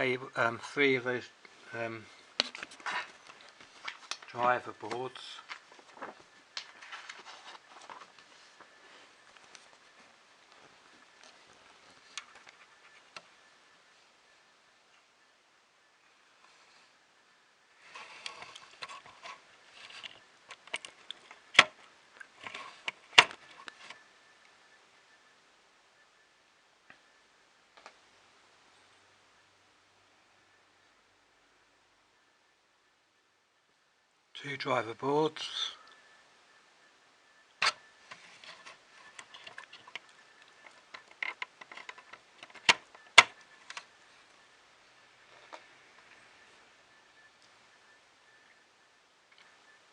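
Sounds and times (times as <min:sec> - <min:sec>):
rustling of small parts: 0:37.6 - 0:44.4.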